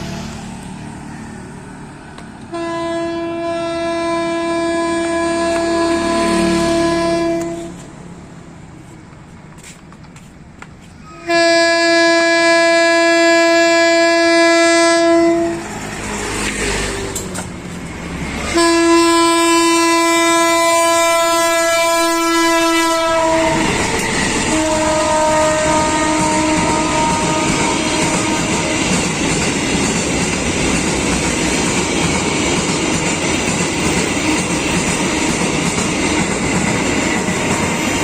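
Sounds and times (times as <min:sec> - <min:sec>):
passing train rushing: 0:00.0 - 0:38.0
locomotive air horn blasts: 0:02.5 - 0:07.9, 0:11.0 - 0:15.7, 0:18.5 - 0:28.9
train wheel clatter: 0:08.8 - 0:11.2, 0:15.6 - 0:18.7, 0:23.2 - 0:38.0.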